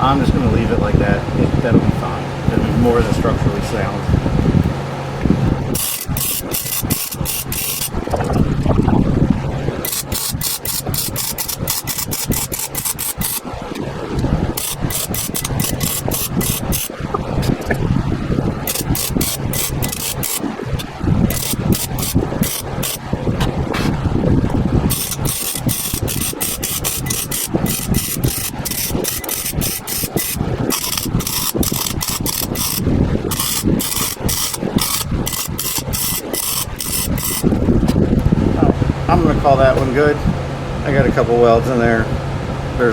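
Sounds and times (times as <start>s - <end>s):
steady low hum: 0.0s - 42.9s
steady low rumble: 0.0s - 42.9s
welding arc crackling: 5.6s - 38.0s.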